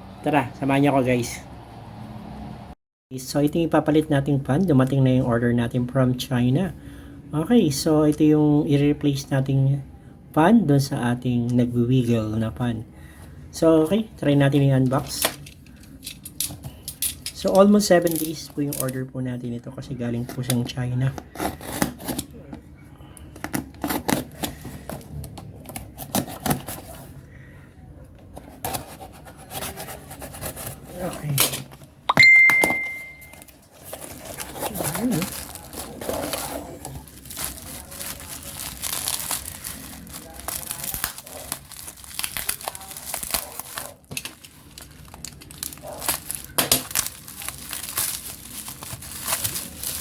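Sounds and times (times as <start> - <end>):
packaging crinkling and clicking: 33.3 - 50.0.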